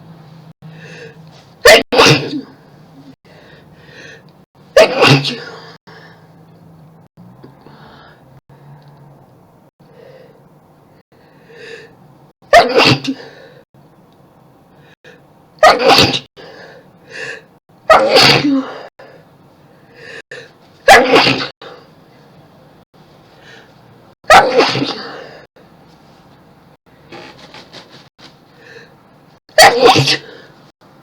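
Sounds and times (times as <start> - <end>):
person sneezing loudly: 1.6 - 2.5, 4.8 - 5.8, 12.5 - 13.3, 15.6 - 16.3, 17.9 - 18.9, 20.9 - 21.5, 24.3 - 25.4, 29.6 - 30.5
intake of breath: 7.6 - 9.0.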